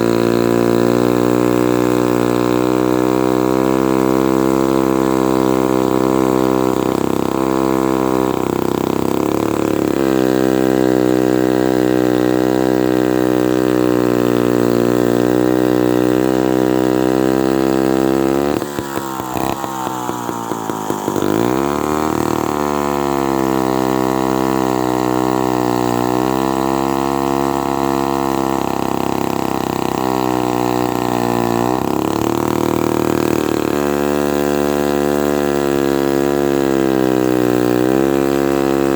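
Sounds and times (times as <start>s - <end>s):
chainsaw cutting wood: 0.0s - 38.9s.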